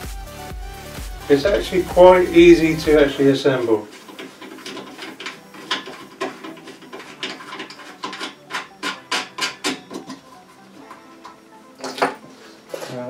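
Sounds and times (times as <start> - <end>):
clicks and knocks of parts handled: 10.9 - 13.0.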